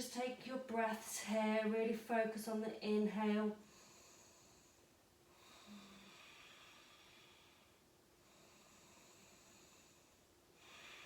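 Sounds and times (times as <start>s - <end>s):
slow deep breathing: 3.6s - 11.0s.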